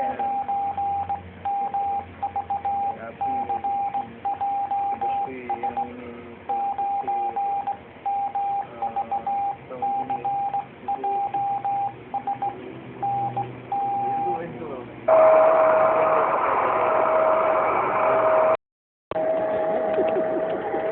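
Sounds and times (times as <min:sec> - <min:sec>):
morse code beeps: 0:00.0 - 0:14.4.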